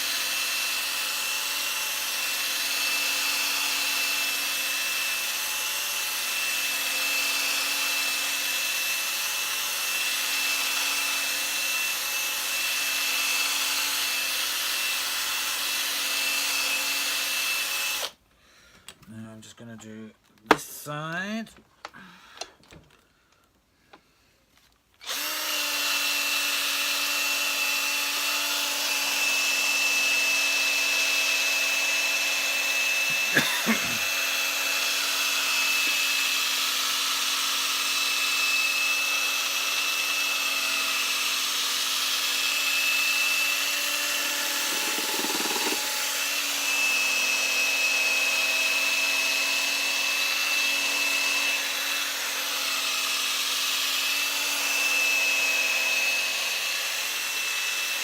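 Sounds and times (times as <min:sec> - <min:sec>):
polishing machine motor whine: 0:44.1 - 0:46.7.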